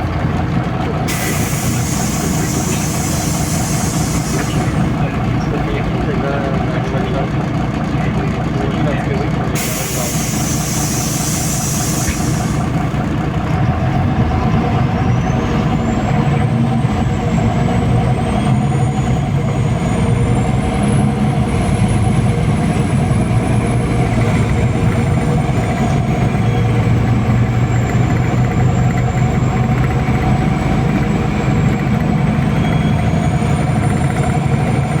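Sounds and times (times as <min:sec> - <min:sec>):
bus engine running: 0:00.0 - 0:35.0
compressed air hiss: 0:01.1 - 0:04.7, 0:09.6 - 0:12.6.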